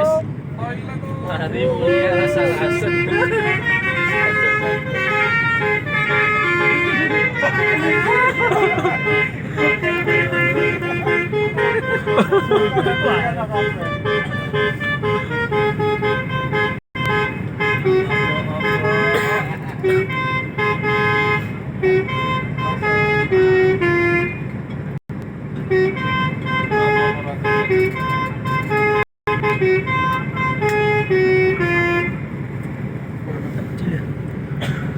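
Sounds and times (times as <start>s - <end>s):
bus horn playing a tune: 0.0s - 0.4s, 1.3s - 24.7s, 25.6s - 32.6s
engine and traffic rumble: 0.0s - 34.9s.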